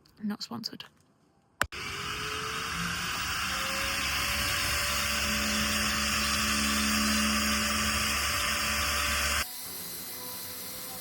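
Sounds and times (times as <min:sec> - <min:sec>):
car polisher motor whine: 0:01.7 - 0:09.5.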